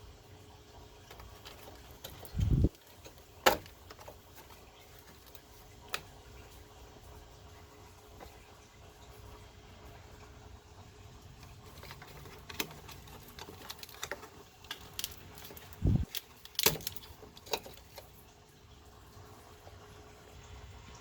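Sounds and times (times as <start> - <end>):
plastic clips clicking and rattling: 1.1 - 6.1, 11.4 - 18.1.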